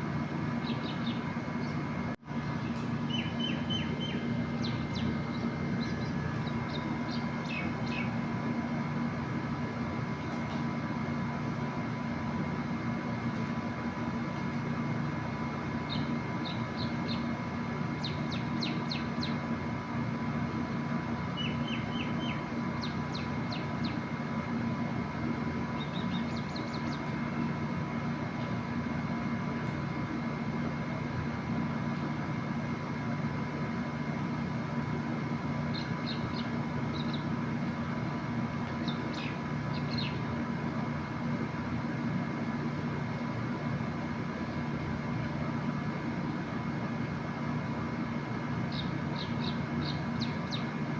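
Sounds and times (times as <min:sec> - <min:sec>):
mechanical hum: 0:00.0 - 0:50.9
high bird chirps: 0:00.6 - 0:01.8, 0:02.6 - 0:08.2, 0:15.9 - 0:17.3, 0:18.0 - 0:19.4, 0:21.4 - 0:24.0, 0:38.8 - 0:40.2, 0:48.7 - 0:50.7.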